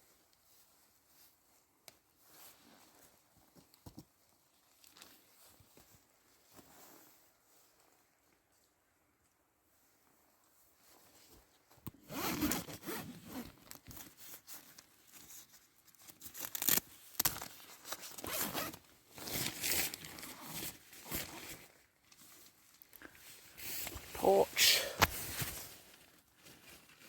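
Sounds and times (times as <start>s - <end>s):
zip being pulled: 12.0s - 13.5s.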